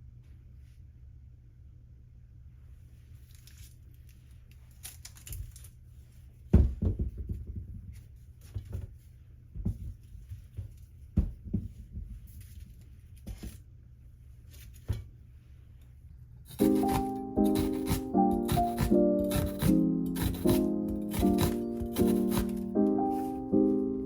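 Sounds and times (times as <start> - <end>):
objects rustling: 3.0 - 6.8
objects tapping and knocking: 6.5 - 9.0, 9.6 - 12.6.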